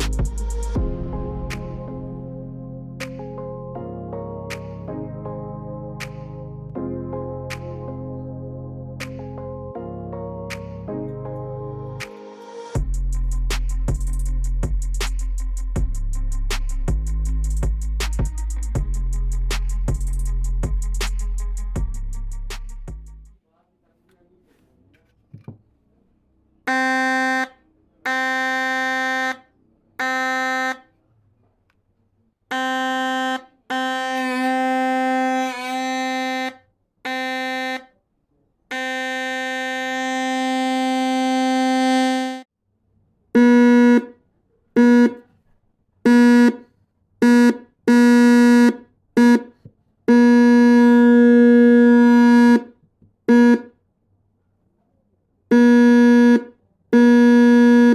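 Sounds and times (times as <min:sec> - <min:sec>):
harsh buzzing horn tone: 0:26.7 - 0:30.9, 0:32.5 - 0:37.9, 0:38.7 - 0:42.5, 0:43.4 - 0:44.1, 0:44.8 - 0:45.2, 0:46.1 - 0:46.6, 0:47.2 - 0:49.4, 0:50.1 - 0:52.6, 0:53.3 - 0:53.7, 0:55.5 - 0:56.4, 0:57.0 - 0:57.9.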